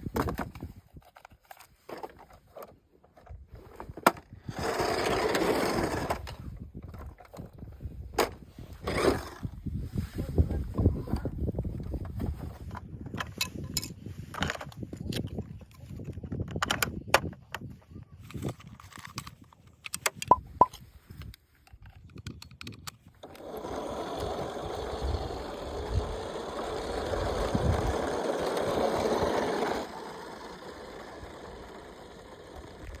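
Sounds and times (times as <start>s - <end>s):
toy electric motor whirring: 4.4s - 6.4s, 8.8s - 9.5s, 23.2s - 33.0s.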